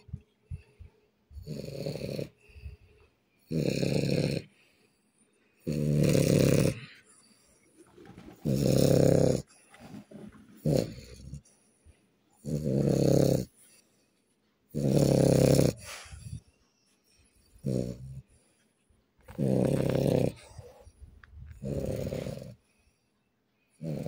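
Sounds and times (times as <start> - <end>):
person snoring loudly: 1.4 - 2.4, 3.5 - 4.5, 5.6 - 7.0, 8.4 - 9.5, 10.6 - 11.4, 12.4 - 13.5, 14.7 - 16.4, 17.6 - 18.2, 19.3 - 20.7, 21.5 - 22.6, 23.8 - 24.0.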